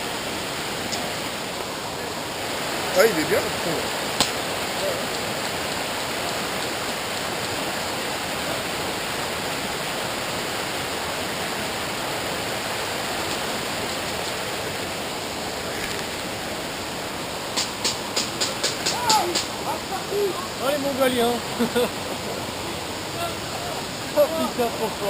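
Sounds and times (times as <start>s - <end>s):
river water rushing: 0.0s - 25.0s
sharp clicks: 17.6s - 19.5s.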